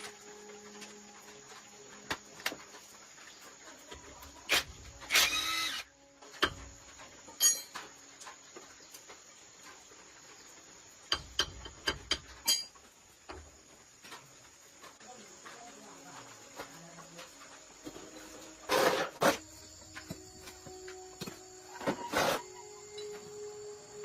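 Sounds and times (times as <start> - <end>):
tools clicking and knocking: 11.1 - 12.8.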